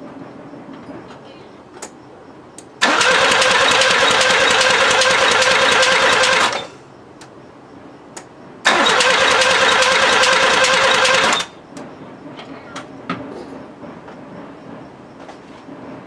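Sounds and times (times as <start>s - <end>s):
car engine cranking: 2.8s - 6.8s, 8.6s - 11.5s.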